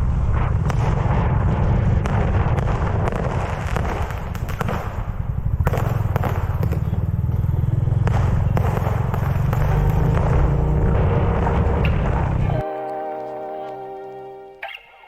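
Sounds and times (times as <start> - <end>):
steady low rumble: 0.0 - 12.7
firecrackers cracking: 0.0 - 13.8.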